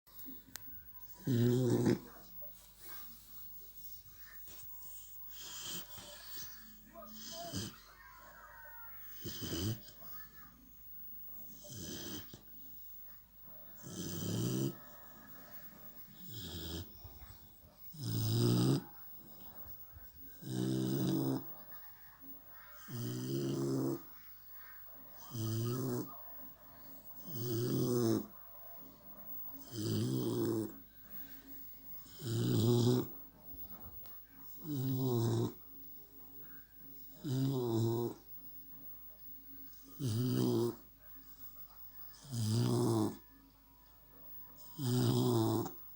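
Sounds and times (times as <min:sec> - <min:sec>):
puppy snoring: 0:01.1 - 0:02.3, 0:03.8 - 0:07.9, 0:09.1 - 0:10.0, 0:11.5 - 0:12.9, 0:13.8 - 0:21.6, 0:22.6 - 0:24.2, 0:25.2 - 0:26.2, 0:27.2 - 0:28.4, 0:29.6 - 0:30.8, 0:32.0 - 0:35.7, 0:37.1 - 0:38.3, 0:40.0 - 0:40.9, 0:42.2 - 0:43.3, 0:44.6 - 0:45.9.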